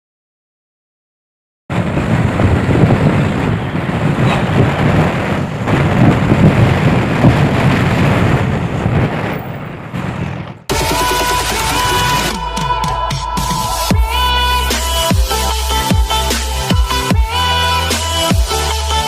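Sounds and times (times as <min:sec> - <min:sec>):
motorbike riding noise: 0:01.7 - 0:12.3
wind buffeting microphone: 0:01.7 - 0:12.4.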